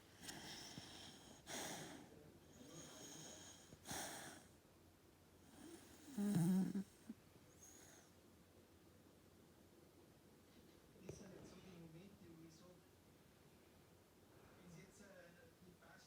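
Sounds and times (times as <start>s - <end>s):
puppy snoring softly: 0.0s - 4.6s, 5.4s - 8.2s.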